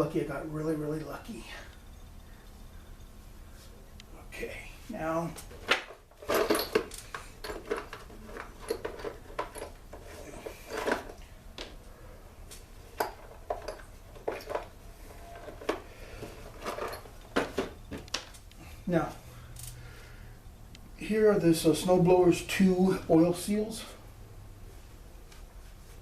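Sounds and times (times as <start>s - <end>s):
low hum: 0.3s - 5.4s
metal parts clinking on workbench: 5.6s - 11.2s.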